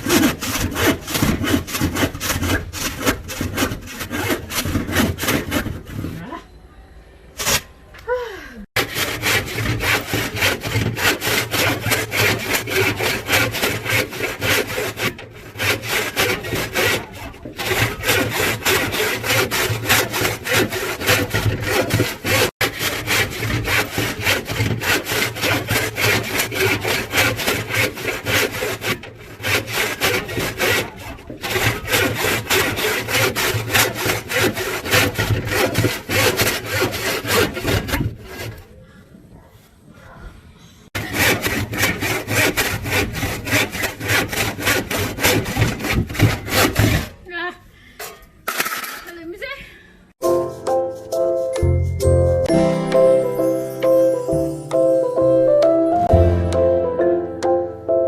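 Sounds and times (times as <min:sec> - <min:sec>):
saw cutting through wood: 0:00.0 - 0:06.3, 0:08.8 - 0:38.8, 0:40.9 - 0:47.3.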